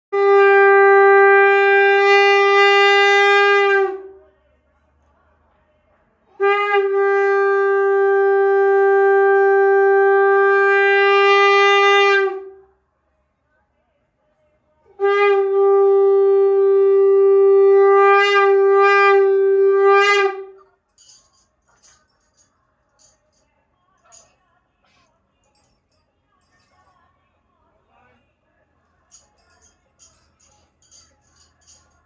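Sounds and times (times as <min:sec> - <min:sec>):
conch shell blasts: 0:15.0 - 0:21.2
faint clinks: 0:20.6 - 0:24.6, 0:25.3 - 0:27.2, 0:28.9 - 0:32.0.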